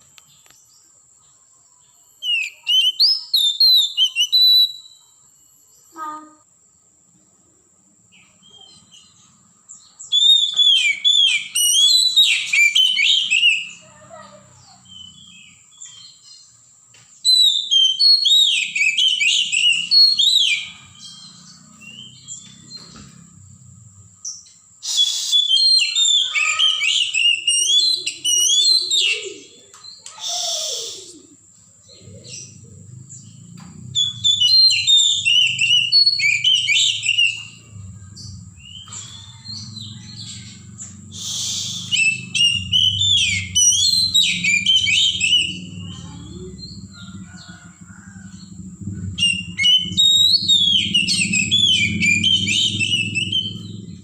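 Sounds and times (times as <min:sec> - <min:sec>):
bird singing whistled phrases: 0:02.1 - 0:05.0, 0:10.0 - 0:16.1, 0:17.2 - 0:22.4, 0:24.8 - 0:31.2, 0:34.0 - 0:40.2, 0:41.2 - 0:47.6, 0:49.2 - 0:54.0.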